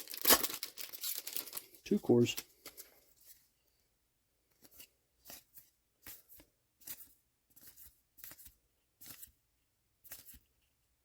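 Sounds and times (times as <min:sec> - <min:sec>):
cards sliding and flicking: 0:04.6 - 0:09.4, 0:10.0 - 0:10.5.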